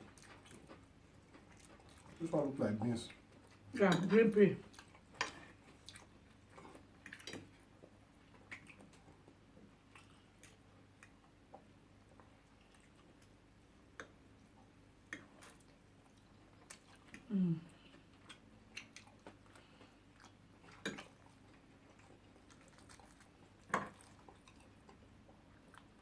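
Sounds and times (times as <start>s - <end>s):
chewing: 0.0s - 26.0s
mouth clicks and smacks: 14.0s - 14.2s.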